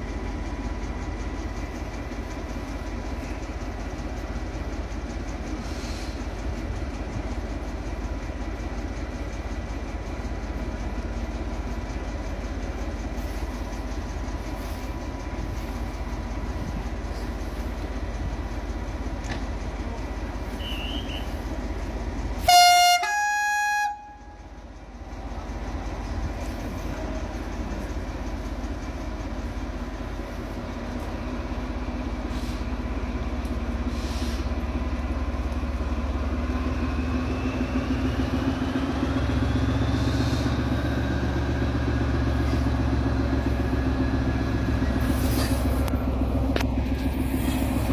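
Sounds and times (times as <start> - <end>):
diesel locomotive engine rumble: 0.0 - 47.9
two-note locomotive horn: 22.4 - 24.4.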